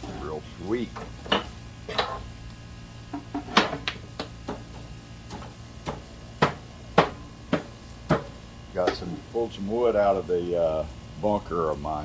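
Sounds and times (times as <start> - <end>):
wood fire crackling: 0.0 - 12.0
sharp pops of fire: 0.9 - 9.2.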